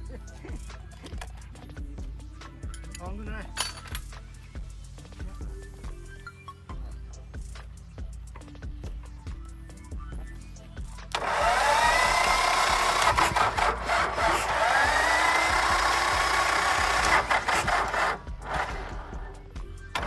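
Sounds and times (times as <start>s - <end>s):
starter motor cranking engine: 0.0s - 5.8s, 10.8s - 20.0s.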